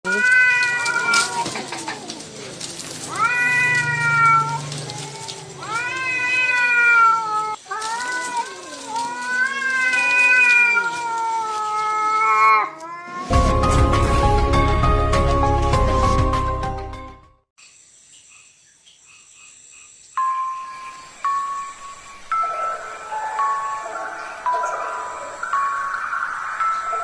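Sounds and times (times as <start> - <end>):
cats yowling in a fight: 0.1 - 13.3.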